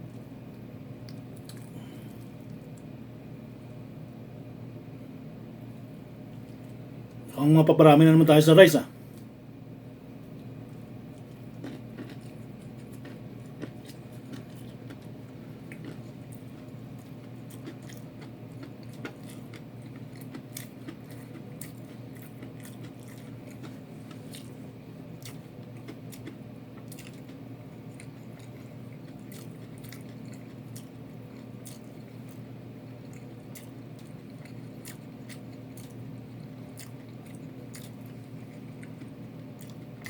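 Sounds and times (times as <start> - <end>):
chewing crunchy food: 1.0 - 3.0, 10.3 - 40.0.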